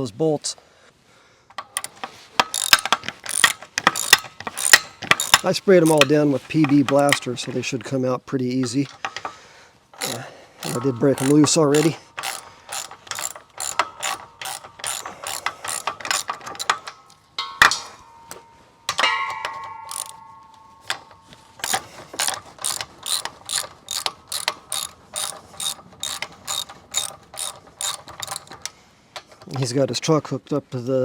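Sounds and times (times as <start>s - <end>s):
ratchet wrench clicking: 1.5s - 7.7s, 8.6s - 9.4s, 10.0s - 29.7s
metallic ringing: 10.0s - 29.3s
sharp metal clank: 13.1s - 22.0s.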